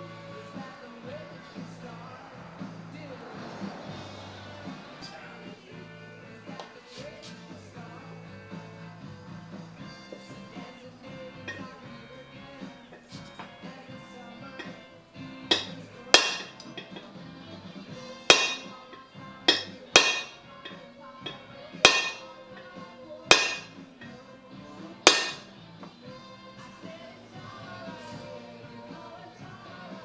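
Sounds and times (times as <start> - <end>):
background music: 0.0 - 30.0
hammer tapping on metal: 15.5 - 17.0, 18.3 - 18.8, 19.5 - 22.3, 23.3 - 23.8, 25.1 - 25.5.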